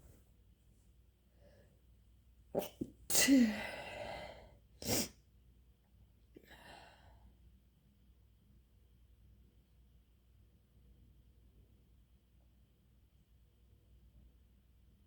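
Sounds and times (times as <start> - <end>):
person sneezing: 2.6 - 4.0, 4.8 - 5.1.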